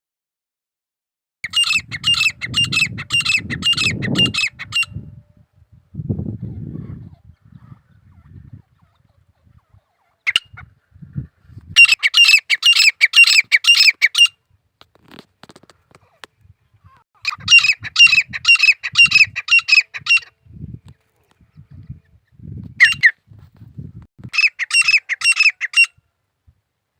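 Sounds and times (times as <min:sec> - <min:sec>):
bird calling harsh repeated notes: 0:01.4 - 0:05.0, 0:10.2 - 0:10.6, 0:11.8 - 0:14.4, 0:17.2 - 0:20.4, 0:24.3 - 0:26.0.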